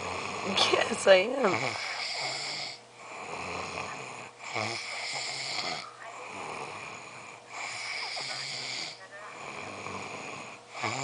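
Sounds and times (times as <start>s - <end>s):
person snoring: 1.5s - 11.0s.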